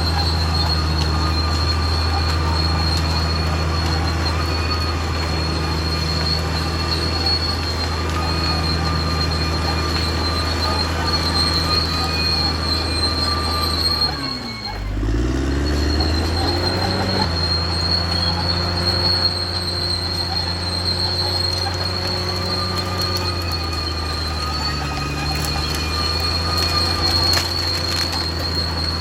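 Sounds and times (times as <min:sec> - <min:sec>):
bulldozer diesel engine: 0:00.0 - 0:29.0
steel tracks squealing: 0:00.0 - 0:29.0.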